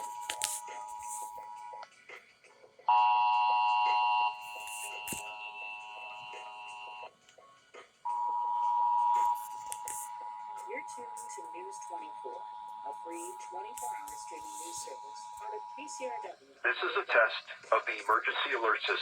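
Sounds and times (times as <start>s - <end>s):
steady high tone: 8.1s - 16.3s.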